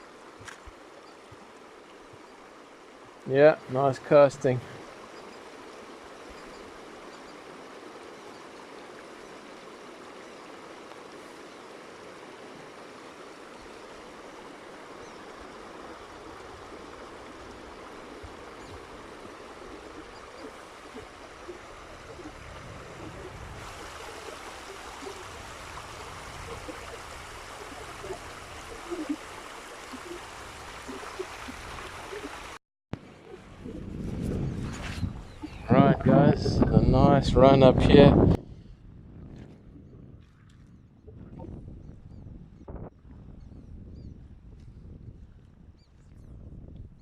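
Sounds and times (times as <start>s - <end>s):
river water running over stones: 0.0s - 32.6s.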